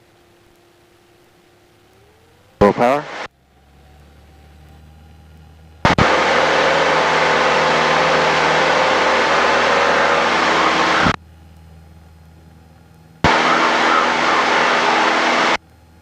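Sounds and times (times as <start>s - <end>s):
faint steady engine drone: 0.0s - 16.0s.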